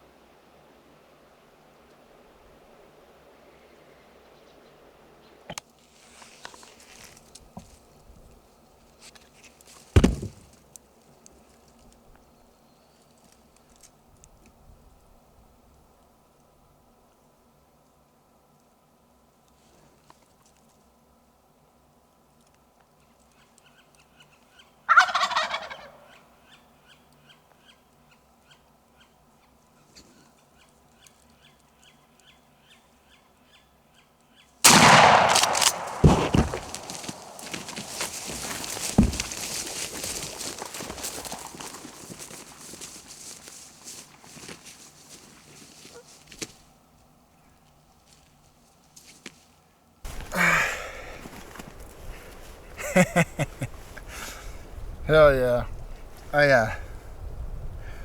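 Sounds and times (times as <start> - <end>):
faint scattered ticks: 10.5 - 24.6, 27.0 - 33.3, 37.0 - 50.2
loud sudden thump: 34.7 - 39.3.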